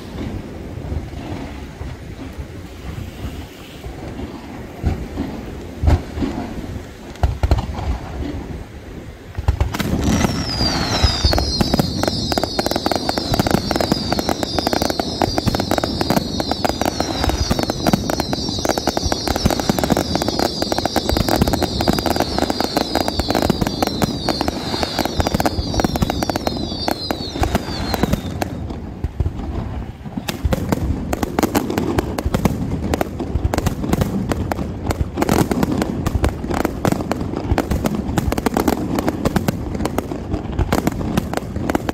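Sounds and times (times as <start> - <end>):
fireworks bangs and crackling: 0.0 - 41.9
whistling firework shells: 9.4 - 32.4.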